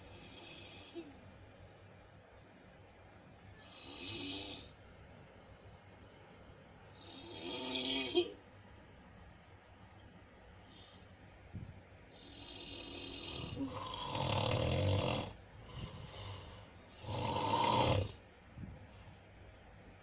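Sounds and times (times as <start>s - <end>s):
breathy hiss: 0.0s - 1.2s, 3.4s - 8.4s, 10.5s - 18.2s
person snoring: 3.6s - 4.7s, 7.0s - 8.3s, 12.2s - 18.2s.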